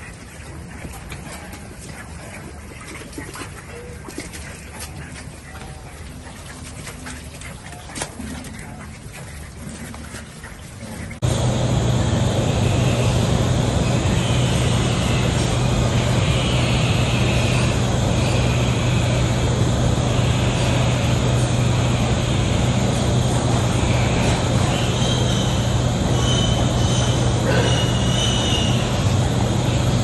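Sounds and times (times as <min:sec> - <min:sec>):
machine motor humming: 0:11.2 - 0:30.0.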